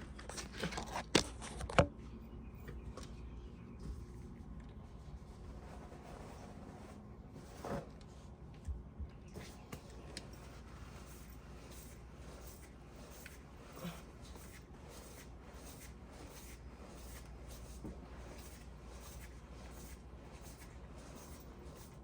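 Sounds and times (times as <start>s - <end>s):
rag rubbing a chain: 10.3s - 22.0s.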